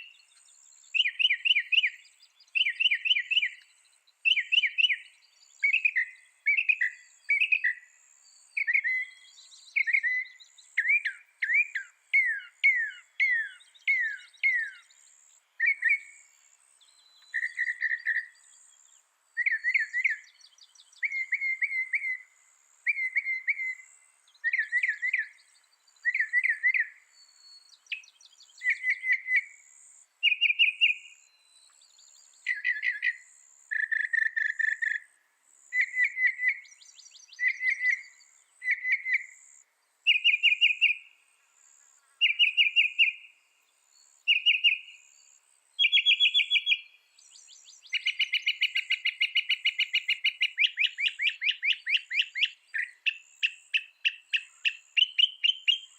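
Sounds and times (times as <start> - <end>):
mockingbird singing: 1.0 - 7.8, 8.6 - 15.0, 15.6 - 16.2, 17.0 - 18.6, 19.4 - 22.2, 22.9 - 29.5, 30.2 - 31.2, 32.4 - 35.1, 35.7 - 41.1, 41.8 - 43.3, 44.2 - 55.9.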